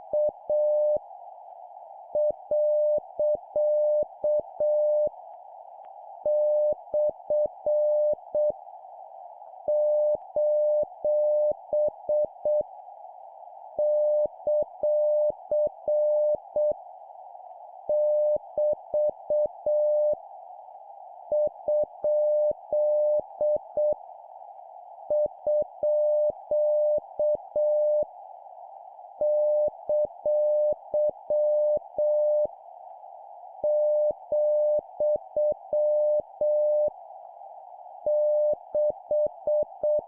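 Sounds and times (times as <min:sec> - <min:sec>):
morse code tone beeps: 0:29.2 - 0:32.5, 0:33.7 - 0:36.9.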